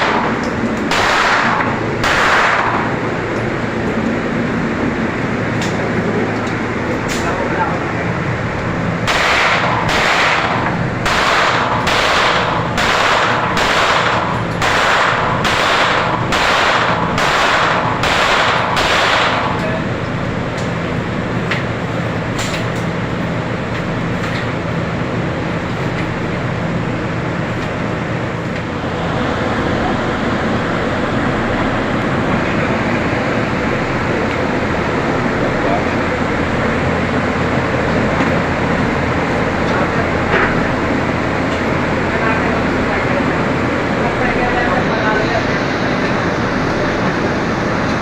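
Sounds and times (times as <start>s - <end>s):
gunshots with echo: 0.0s - 3.0s, 9.0s - 19.6s.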